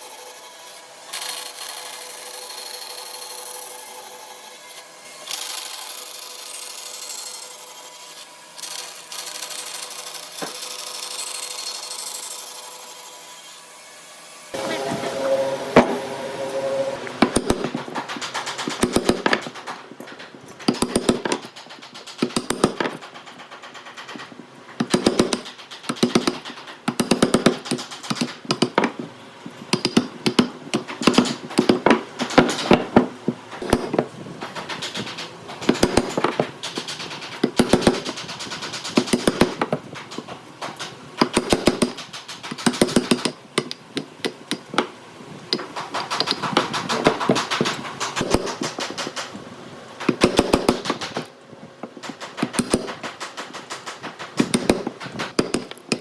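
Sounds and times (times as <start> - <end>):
rapid clicking knocks on wood: 17.6 - 29.0, 50.0 - 56.0.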